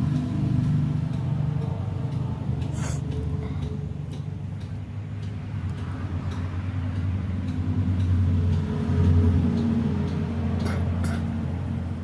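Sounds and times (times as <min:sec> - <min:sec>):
vehicle engine drone passing: 0:00.0 - 0:12.0.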